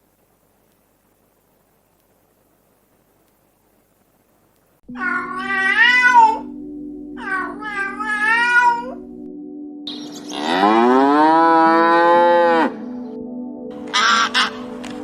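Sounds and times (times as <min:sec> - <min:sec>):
steady low hum: 0:00.0 - 0:05.0
animal calls: 0:13.9 - 0:14.7.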